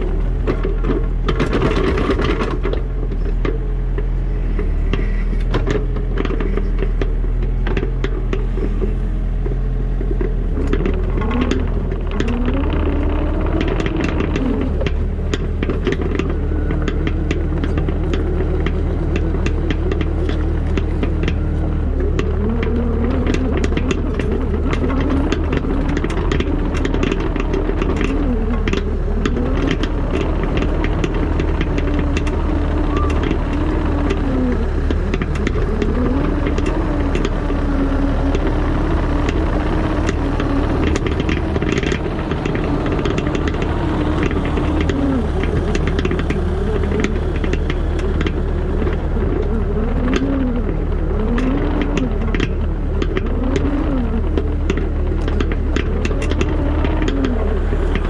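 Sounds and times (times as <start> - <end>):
clicks knocks and rattles: 0.0 - 58.0
diesel digger engine drone: 0.0 - 58.0.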